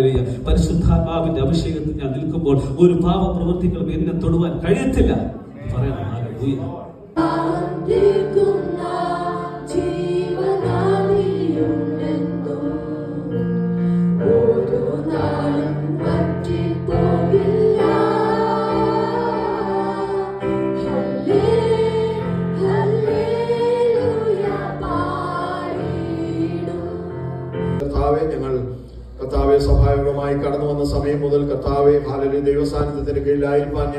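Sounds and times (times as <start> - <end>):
steady held chords: 0.0 - 33.9
group singing worship song: 6.9 - 28.4.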